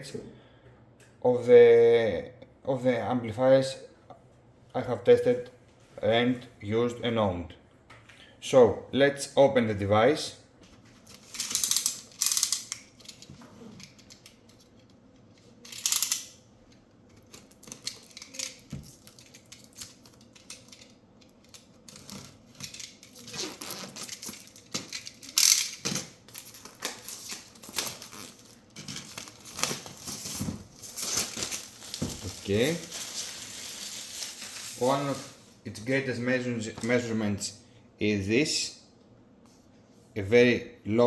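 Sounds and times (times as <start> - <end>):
packaging rustles scrapes and clicks: 17.2 - 35.4.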